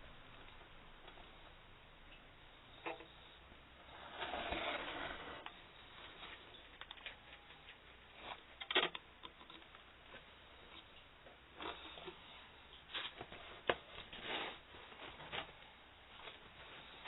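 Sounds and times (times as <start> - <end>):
brushing scraping rustle: 3.8 - 6.4, 11.7 - 15.6.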